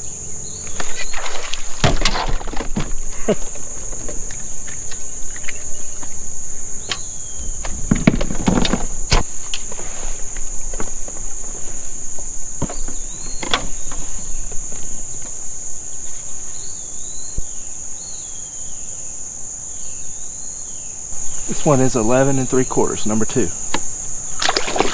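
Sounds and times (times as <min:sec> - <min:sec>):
insects buzzing: 0:00.0 - 0:24.9
hollow knocks and clatters: 0:00.7 - 0:15.4.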